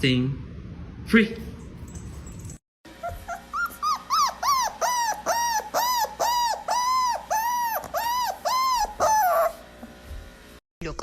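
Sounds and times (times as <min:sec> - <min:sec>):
dog yelping: 0:02.2 - 0:09.7.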